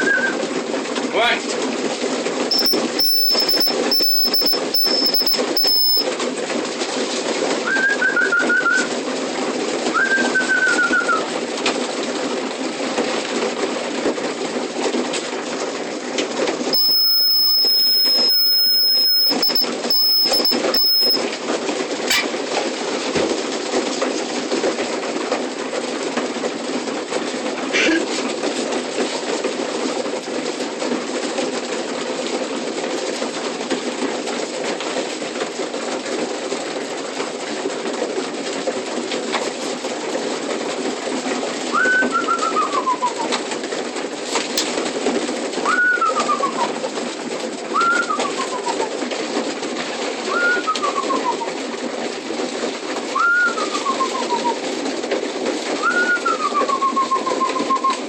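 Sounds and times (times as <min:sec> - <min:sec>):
short falling chirps: 0:02.5 - 0:06.0, 0:16.8 - 0:21.2
thin high steady tone: 0:02.5 - 0:06.0, 0:16.7 - 0:21.2.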